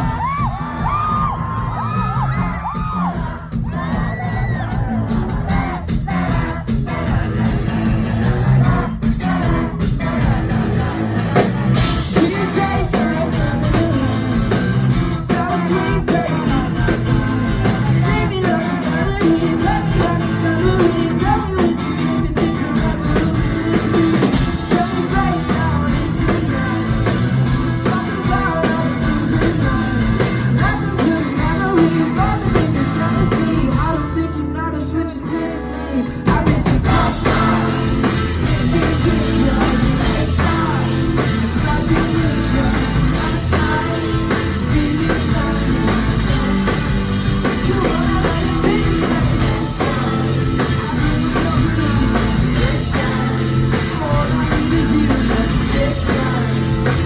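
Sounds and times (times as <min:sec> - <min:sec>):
pop-rock band playing: 0:00.0 - 0:57.0
person singing: 0:11.8 - 0:57.0.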